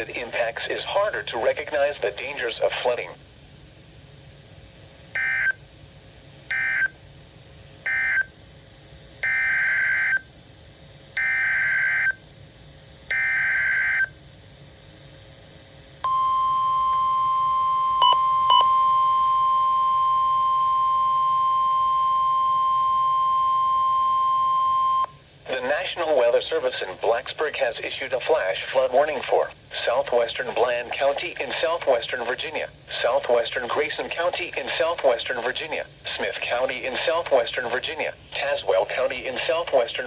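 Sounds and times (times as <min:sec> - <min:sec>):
weather radio alarm tone: 0:16.1 - 0:25.1.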